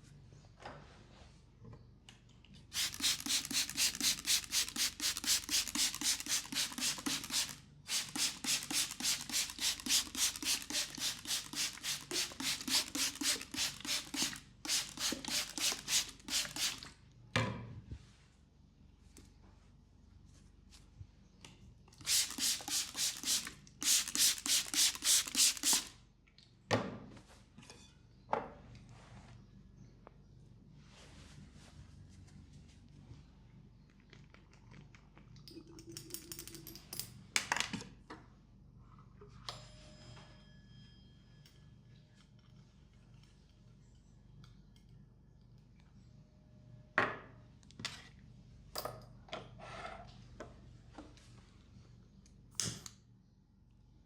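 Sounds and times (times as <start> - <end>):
hands rubbing on skin: 2.8 - 16.8.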